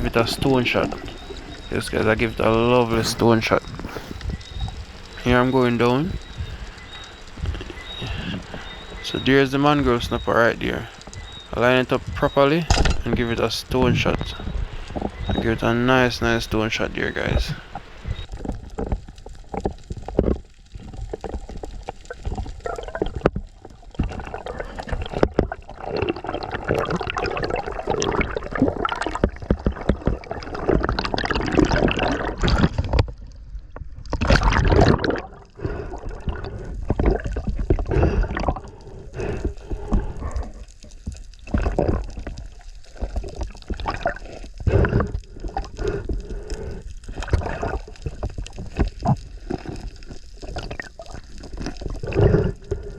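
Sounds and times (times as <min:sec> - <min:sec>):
sea water gurgling and sloshing: 0:00.0 - 0:52.9.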